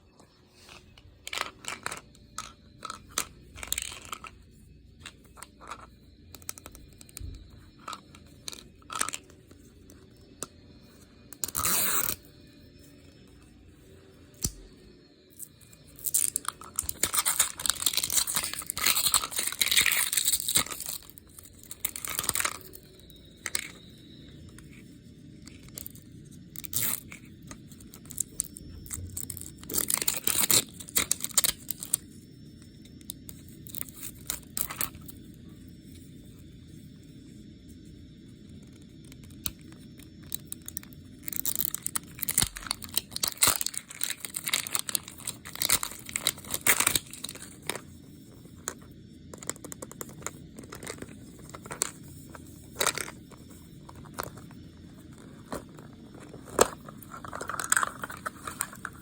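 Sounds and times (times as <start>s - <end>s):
plastic wrapping crinkling: 15.9s - 23.8s, 28.0s - 32.0s, 40.3s - 47.8s, 52.8s - 59.0s.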